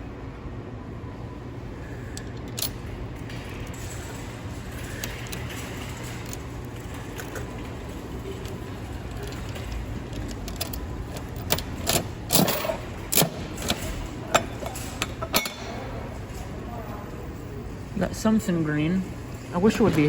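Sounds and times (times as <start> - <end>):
vending machine metallic clicks: 9.2 - 15.8.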